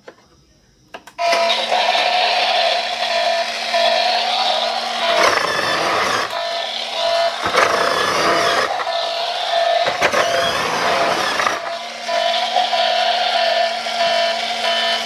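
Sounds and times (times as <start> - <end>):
toy electronic engine sound: 1.1 - 15.0
electronic beeping tone: 3.0 - 15.0.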